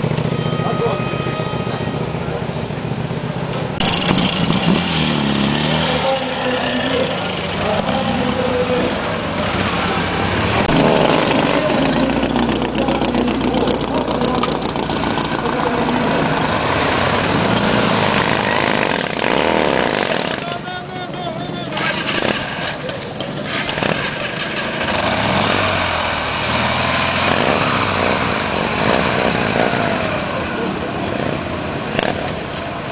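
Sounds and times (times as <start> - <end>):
voices: 0.0 - 3.8, 5.7 - 19.2, 20.0 - 24.8
motorcycle engines revving: 0.0 - 32.9.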